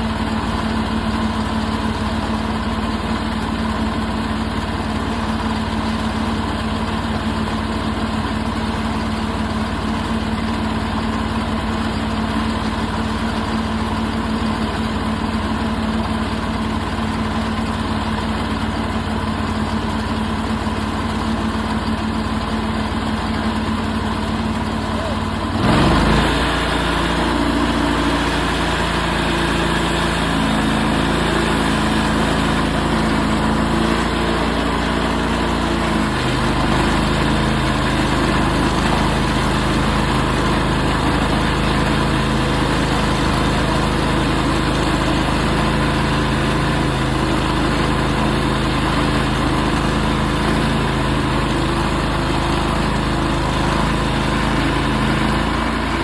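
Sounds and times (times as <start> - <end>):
sawmill engine cutting log: 0.0 - 56.0.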